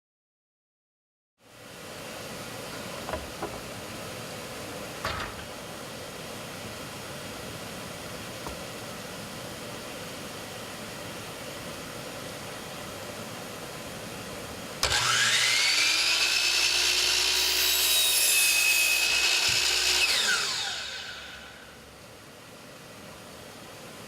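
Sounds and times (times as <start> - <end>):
saw blade cutting wood: 14.8 - 21.7
miter saw motor whine: 14.8 - 21.8.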